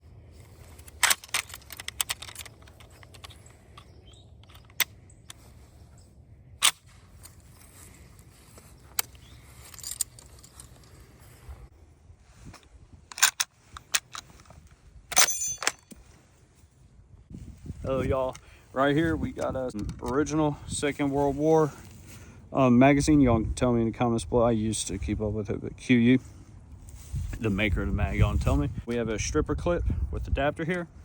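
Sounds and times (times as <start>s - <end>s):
metallic clicks and rattles: 0.6s - 5.4s, 8.9s - 11.0s.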